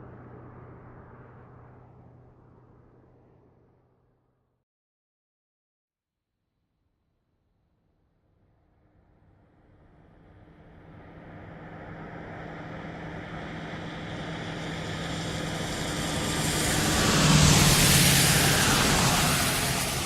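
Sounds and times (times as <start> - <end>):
sports car engine passing by: 15.2 - 20.0.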